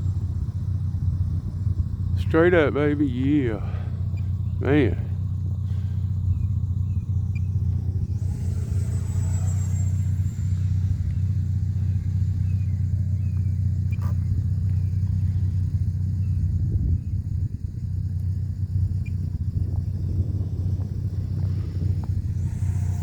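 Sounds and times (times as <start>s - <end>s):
model jet high whine: 0.0s - 23.0s
steady low rumble: 0.0s - 23.0s.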